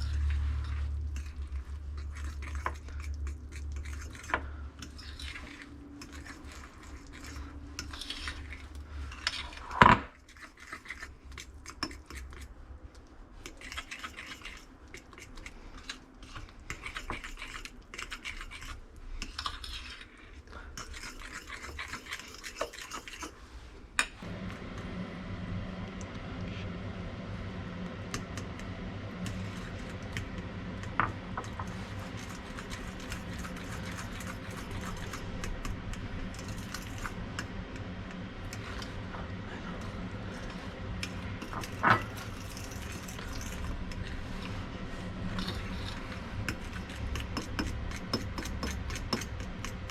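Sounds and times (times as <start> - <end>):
steady machine hum: 0.0 - 9.2, 24.2 - 49.9.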